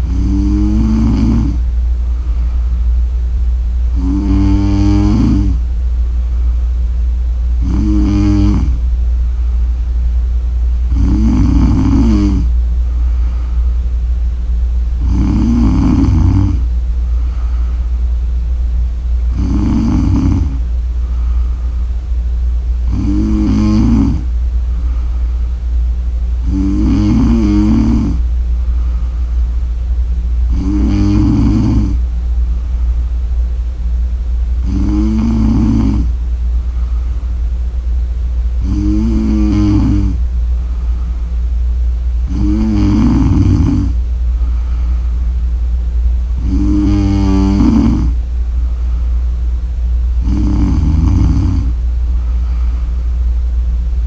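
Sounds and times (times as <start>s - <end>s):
woman snoring: 0.0s - 1.6s, 3.9s - 5.6s, 7.6s - 8.8s, 10.9s - 12.5s, 15.0s - 16.7s, 19.3s - 20.6s, 22.8s - 24.3s, 26.4s - 28.3s, 30.5s - 32.0s, 34.6s - 36.2s, 38.6s - 40.2s, 42.2s - 44.0s, 46.4s - 48.2s, 50.2s - 51.8s
low hum: 0.0s - 54.0s.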